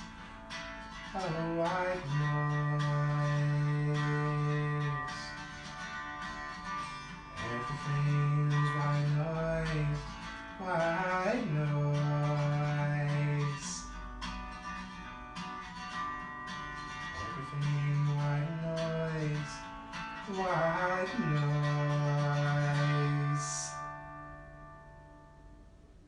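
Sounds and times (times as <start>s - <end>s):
acoustic guitar: 0.0s - 26.0s
person singing wordless notes: 1.2s - 5.3s, 20.3s - 23.8s.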